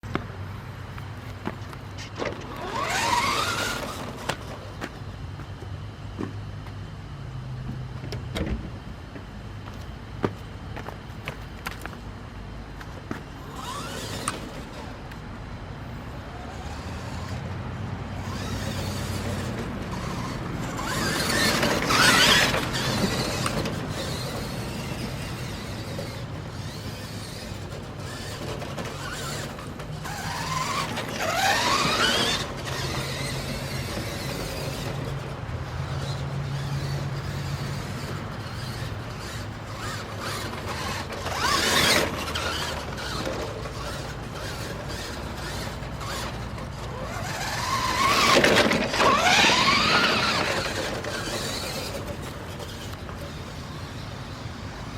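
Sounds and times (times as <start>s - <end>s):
bicycle scratching squeaking: 1.0s - 5.6s, 12.8s - 15.1s, 16.0s - 17.5s, 18.1s - 54.9s
rising squeals: 1.9s - 4.8s, 13.4s - 15.1s, 15.8s - 54.9s.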